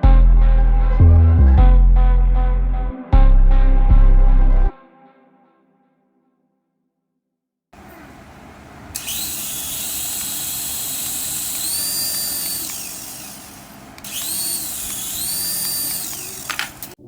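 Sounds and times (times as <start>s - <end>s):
toy electric motor whining: 7.9s - 17.0s.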